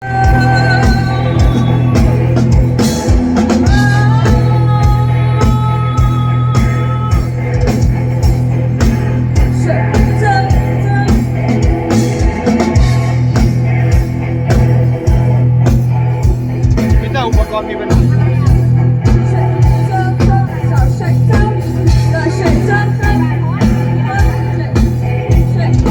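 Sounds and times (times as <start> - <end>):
person singing: 0.0 - 2.8, 3.5 - 7.6
deep held bass: 0.0 - 25.9
drum kit beat: 0.0 - 25.9
electric guitar: 0.0 - 25.9.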